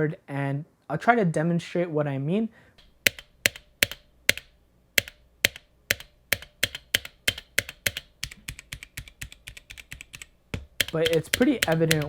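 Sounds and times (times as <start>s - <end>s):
mechanical keyboard keys striking: 3.1s - 12.0s.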